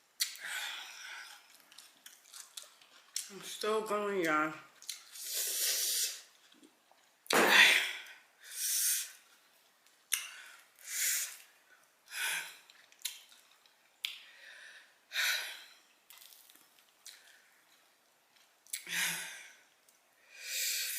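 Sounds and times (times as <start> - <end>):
woman breathing hard and hissing: 5.2 - 6.2, 7.4 - 9.2, 10.4 - 11.4, 20.2 - 20.9.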